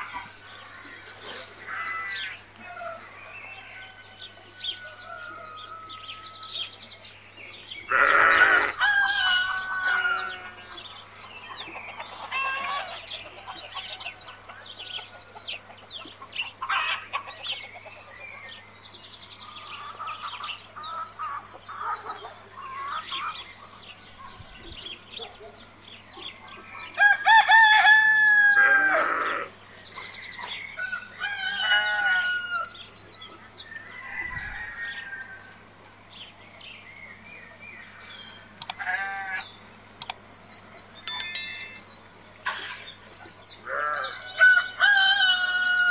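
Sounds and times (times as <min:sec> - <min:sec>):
small birds chirping: 0:03.3 - 0:26.9, 0:36.0 - 0:45.9
rooster crowing: 0:08.0 - 0:10.6, 0:27.0 - 0:29.4, 0:31.2 - 0:32.7, 0:43.7 - 0:45.9
chickens clucking: 0:21.6 - 0:23.4.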